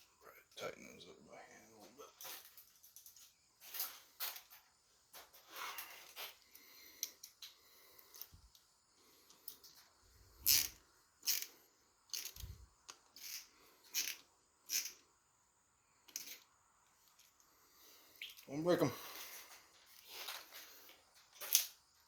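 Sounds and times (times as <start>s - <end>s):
metal tools clicking and clinking: 2.2s - 4.6s, 9.3s - 15.0s, 16.1s - 16.5s.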